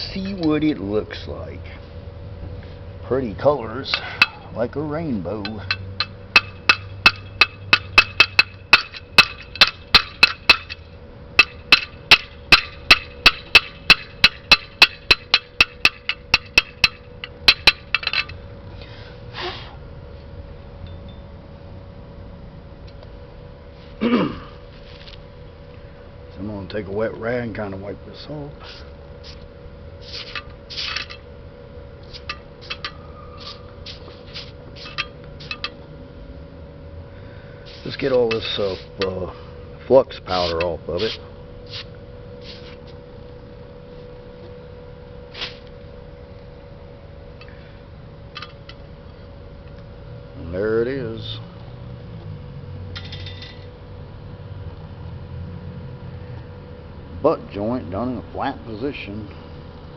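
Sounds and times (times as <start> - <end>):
faint steady hum: 0.0 - 59.9
hammer striking metal: 3.9 - 4.4, 5.4 - 10.8, 11.4 - 18.2.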